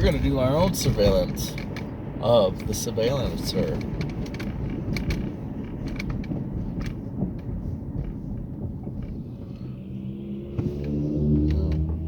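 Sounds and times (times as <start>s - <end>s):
car road and engine rumble: 0.0s - 12.0s.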